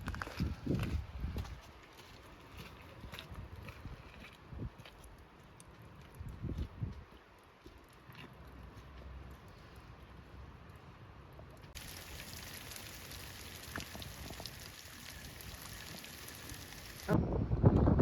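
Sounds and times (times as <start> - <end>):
light rain falling: 11.7 - 17.2.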